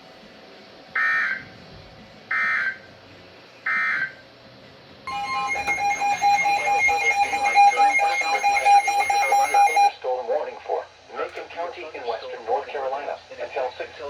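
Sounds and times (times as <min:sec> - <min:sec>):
loud steady alert tone: 0:05.1 - 0:09.9
raspy digital data squawks: 0:05.1 - 0:09.9.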